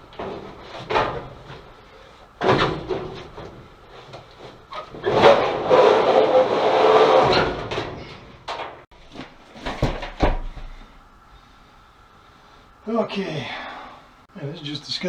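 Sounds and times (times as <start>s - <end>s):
sheet metal scraping: 0.0s - 8.9s.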